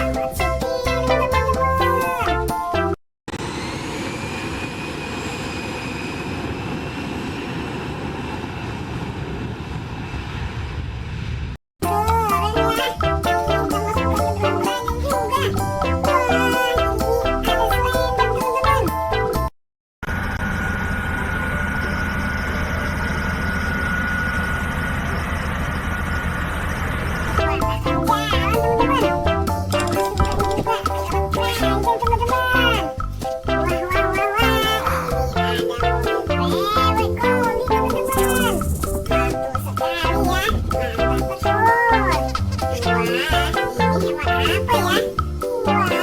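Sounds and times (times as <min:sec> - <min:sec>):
engine running with whine: 0:03.3 - 0:10.7, 0:20.0 - 0:27.4.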